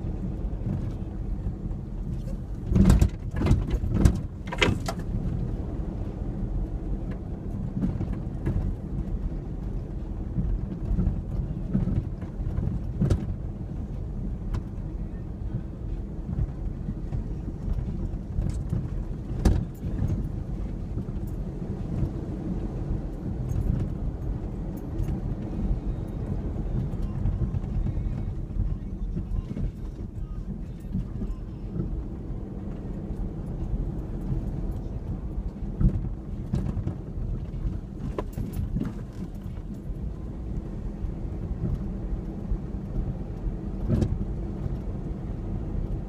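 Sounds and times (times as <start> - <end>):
pickup engine rumble: 0.0 - 46.0
knocks and rattles: 2.1 - 5.1.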